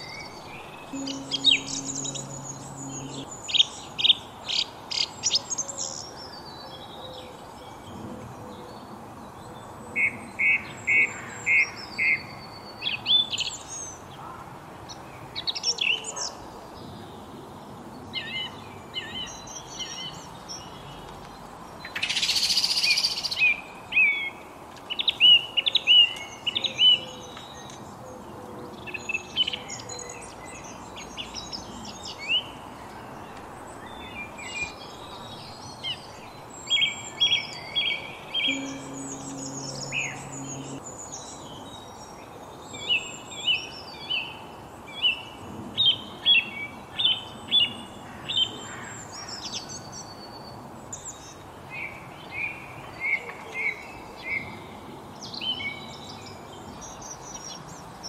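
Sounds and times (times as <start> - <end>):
songbirds chirping and whistling: 0.0 - 14.1, 18.1 - 45.3.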